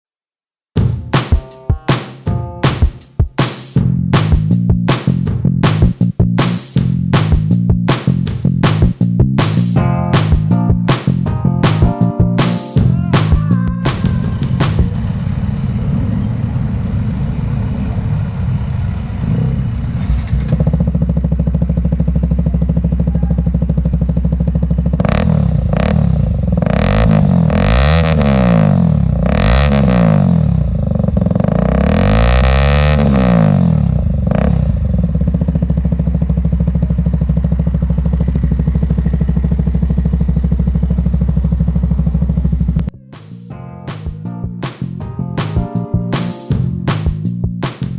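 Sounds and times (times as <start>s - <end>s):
motorcycle engine idling: 20.6s - 26.6s, 34.0s - 42.9s
engine revving: 24.9s - 35.4s.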